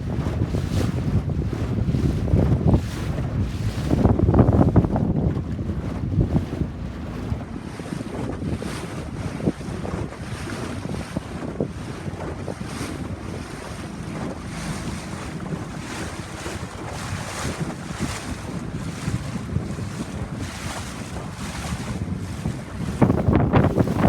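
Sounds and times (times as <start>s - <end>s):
wind buffeting microphone: 0.0s - 24.0s
water rushing: 3.6s - 9.2s, 12.9s - 21.8s, 22.8s - 24.0s.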